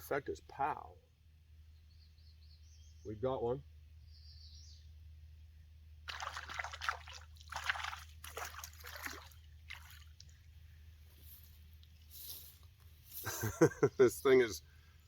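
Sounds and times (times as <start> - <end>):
fish splashing in water: 6.1 - 10.4.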